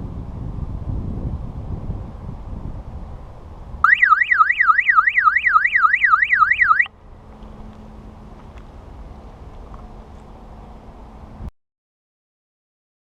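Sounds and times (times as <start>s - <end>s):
bike alarm wailing: 3.8s - 6.9s.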